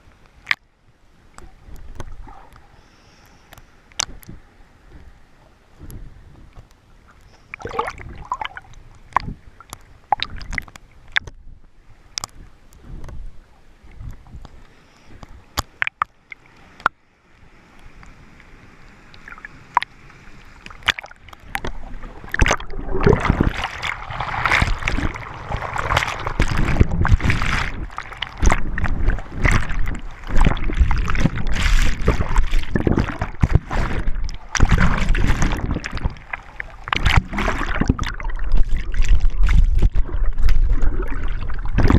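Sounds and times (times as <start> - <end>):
water rushing and sloshing: 3.8 - 41.9
water splashes and knocks: 7.6 - 11.4, 20.6 - 41.9
water washing: 20.6 - 41.9.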